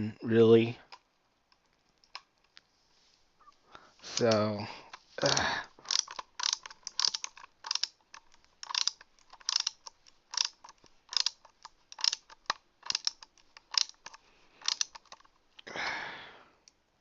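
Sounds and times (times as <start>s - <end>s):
rustle: 2.5s - 4.2s
screwdriver clicking: 5.8s - 15.3s.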